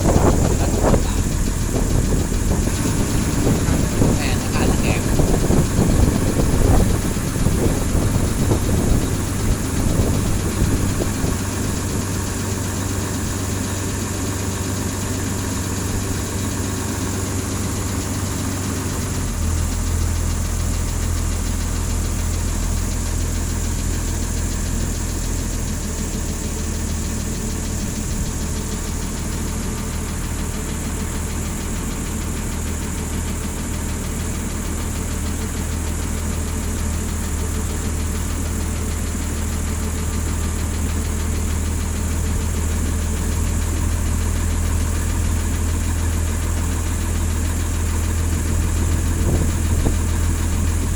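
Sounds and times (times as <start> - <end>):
ferry engine running: 0.0 - 50.9.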